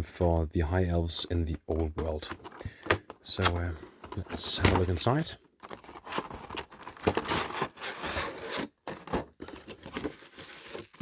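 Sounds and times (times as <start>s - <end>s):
cardboard scraping and rubbing: 5.7s - 11.0s.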